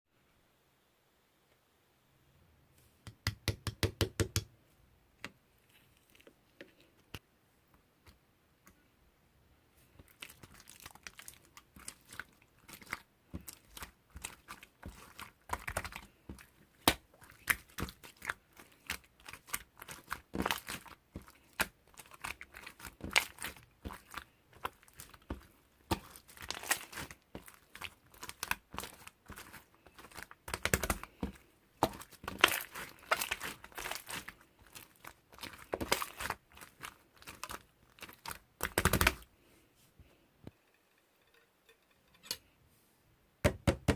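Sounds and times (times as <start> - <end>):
crinkly material rustling and tearing: 10.0 - 39.3.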